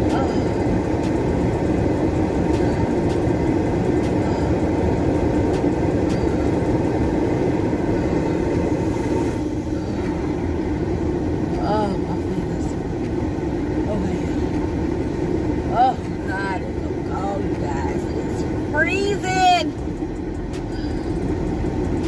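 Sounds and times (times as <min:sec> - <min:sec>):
car engine idling: 0:00.0 - 0:22.0
car heater blower rushing: 0:00.0 - 0:22.0.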